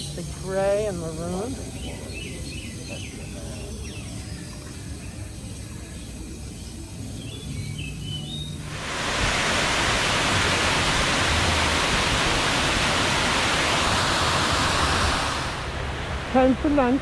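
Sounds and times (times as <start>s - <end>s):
rushing water: 8.6s - 17.0s.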